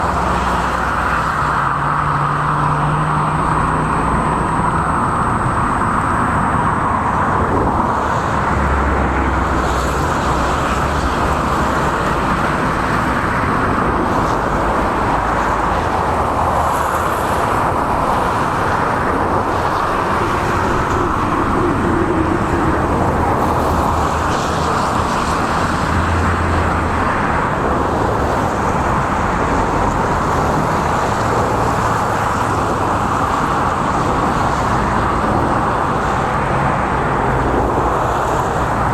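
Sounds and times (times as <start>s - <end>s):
passing vehicles rumbling: 0.0s - 38.9s
road traffic on bridge: 0.0s - 38.9s.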